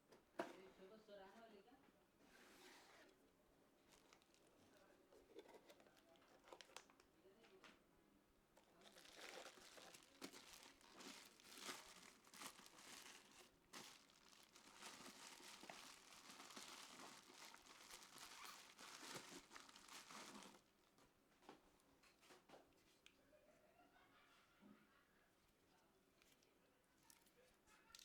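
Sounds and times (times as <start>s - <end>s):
plastic crinkling: 3.8s - 4.8s, 8.6s - 21.0s.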